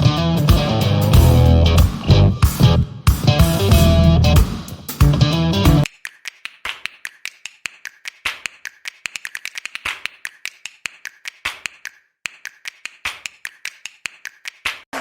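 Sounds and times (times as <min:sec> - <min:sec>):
sharp irregular taps: 0:05.8 - 0:14.8.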